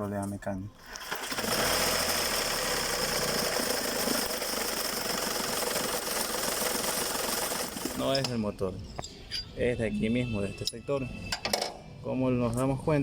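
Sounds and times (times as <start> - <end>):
rapid knocking rattle from belt drive: 1.0 - 8.0.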